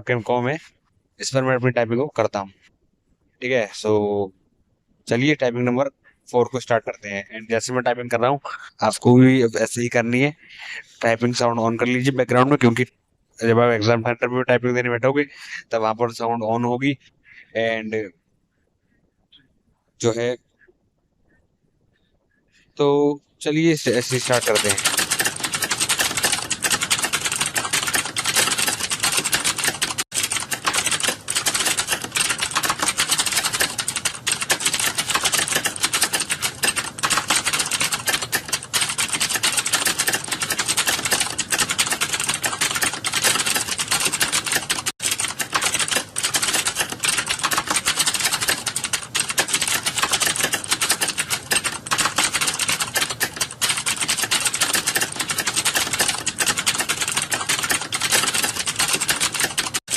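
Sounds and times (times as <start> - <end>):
fast typing on computer keyboard: 23.8 - 59.9.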